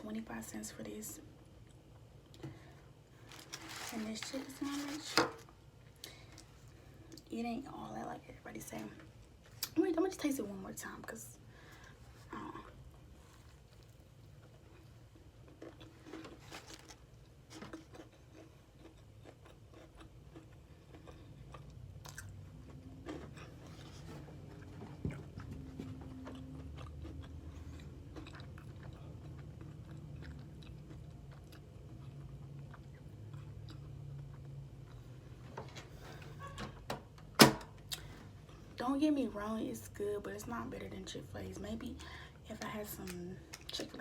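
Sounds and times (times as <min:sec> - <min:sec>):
person chewing with crunches: 0:11.8 - 0:35.4.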